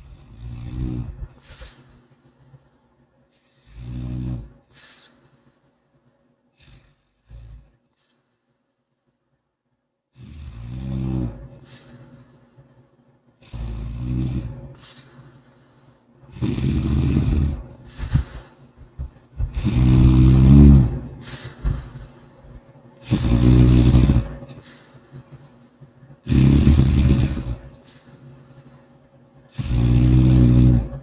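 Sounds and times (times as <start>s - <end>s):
person snoring: 0.0s - 2.0s, 3.4s - 5.2s, 6.6s - 7.7s, 10.2s - 12.3s, 13.4s - 15.4s, 16.3s - 18.8s, 19.4s - 22.3s, 23.0s - 25.5s, 26.2s - 28.5s, 29.5s - 31.0s
weak breaths: 0.0s - 9.2s, 11.3s - 13.7s, 14.4s - 26.4s, 27.3s - 29.6s.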